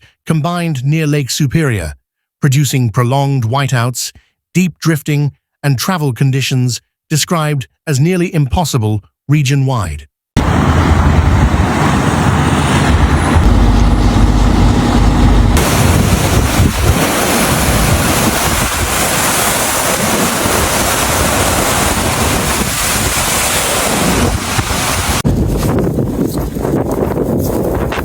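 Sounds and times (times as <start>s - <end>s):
vehicle rumble: 10.4s - 16.9s
rushing wind noise: 10.4s - 28.0s.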